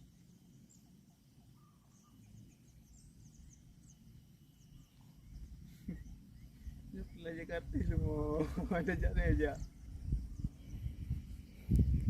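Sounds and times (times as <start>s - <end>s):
faint high chirps: 0.0s - 7.4s.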